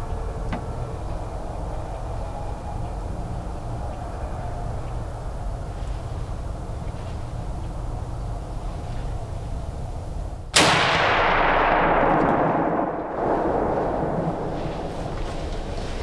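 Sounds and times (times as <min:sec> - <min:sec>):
rifle shot with echo: 0:10.6 - 0:15.7.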